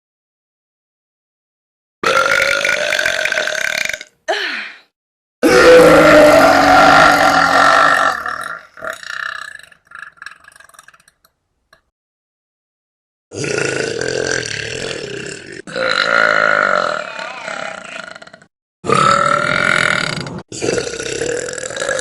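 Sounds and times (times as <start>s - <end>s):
women burping loudly: 2.0s - 4.6s, 5.4s - 10.0s, 13.4s - 22.0s.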